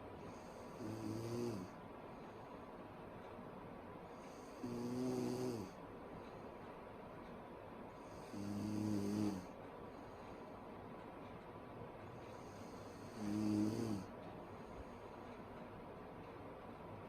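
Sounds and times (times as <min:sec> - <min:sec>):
woman snoring loudly: 0:00.5 - 0:01.7, 0:04.4 - 0:05.8, 0:08.0 - 0:09.5, 0:12.4 - 0:14.1.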